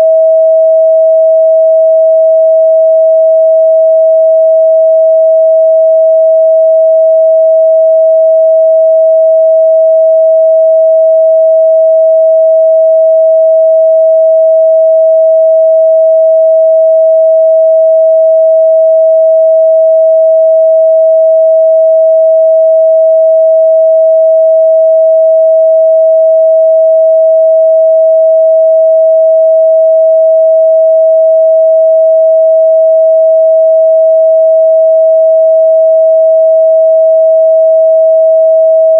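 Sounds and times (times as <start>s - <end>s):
sine wave test tone: 0.0s - 38.9s.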